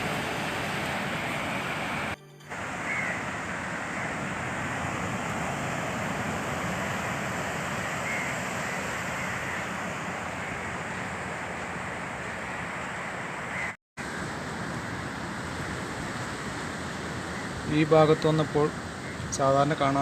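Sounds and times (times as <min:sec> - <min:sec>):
surf and wind: 0:00.0 - 0:20.0
crow cawing: 0:02.8 - 0:04.2, 0:07.7 - 0:10.8, 0:13.5 - 0:13.8.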